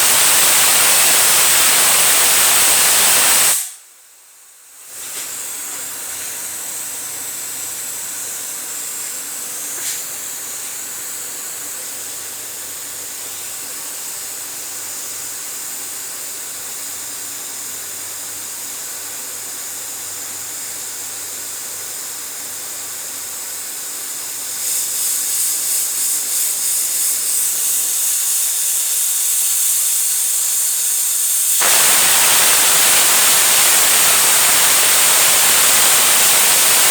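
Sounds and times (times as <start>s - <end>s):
pressure cooker whistle hissing: 0.0s - 3.9s, 24.4s - 36.9s.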